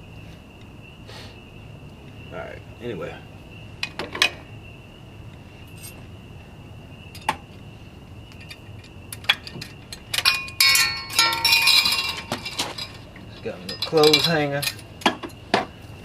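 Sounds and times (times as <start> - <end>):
metal objects jangling and clinking: 5.8 - 6.0, 8.4 - 15.4.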